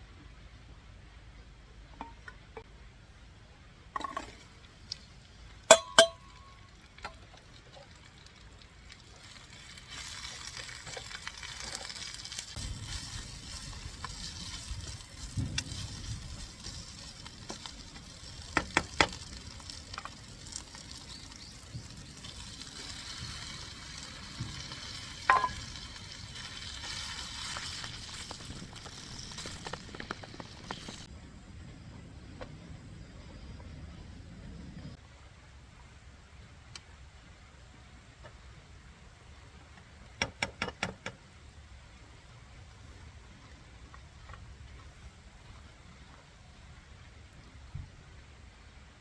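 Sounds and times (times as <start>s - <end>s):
utensils clinking on cookware: 5.7s - 6.4s
food sizzling in a pan: 9.0s - 31.1s.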